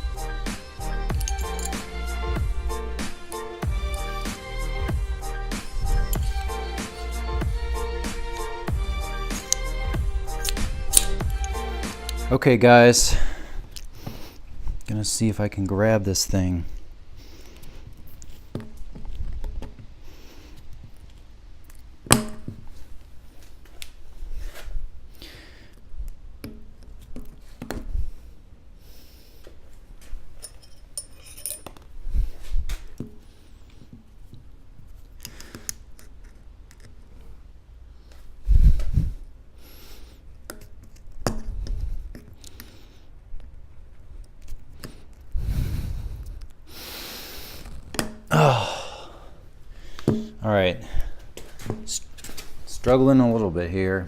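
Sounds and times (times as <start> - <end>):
metal tool scraping: 0.5 - 3.4, 5.5 - 7.4, 9.3 - 12.4, 30.4 - 31.7
hand tool clicks: 1.1 - 1.9, 5.8 - 6.5, 9.4 - 9.7, 10.4 - 12.2
metallic clink: 1.1 - 1.9, 10.4 - 11.6, 30.4 - 31.8
man breathing out heavily: 13.0 - 14.5, 45.3 - 51.4
man groaning: 48.3 - 49.3.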